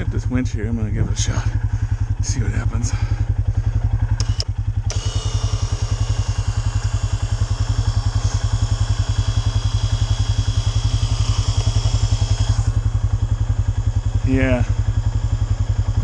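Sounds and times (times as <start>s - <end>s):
engine idling: 0.0s - 16.0s
electric winch whining: 4.2s - 13.3s.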